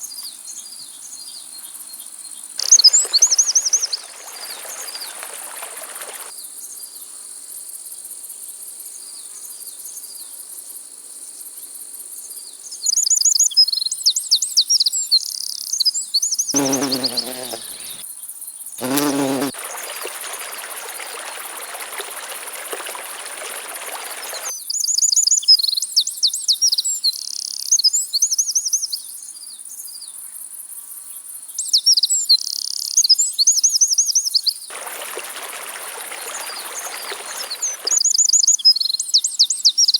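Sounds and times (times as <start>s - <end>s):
insects buzzing: 2.6s - 6.3s, 16.6s - 18.0s, 18.8s - 24.5s, 34.7s - 38.0s.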